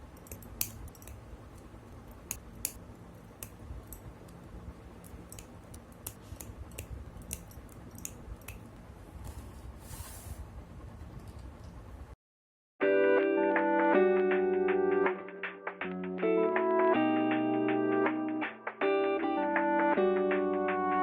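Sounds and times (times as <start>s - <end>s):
low steady hum: 0.0s - 12.2s.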